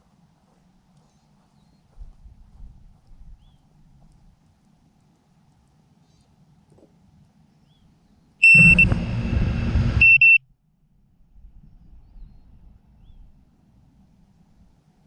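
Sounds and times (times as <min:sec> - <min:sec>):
electronic beeps: 0:08.4 - 0:10.4
loud rumbling noise: 0:08.4 - 0:10.4.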